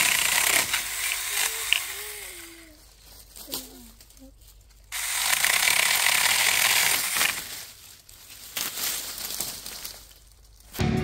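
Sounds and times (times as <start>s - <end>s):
electric chainsaw cutting wood: 0.0s - 2.7s, 5.0s - 7.6s.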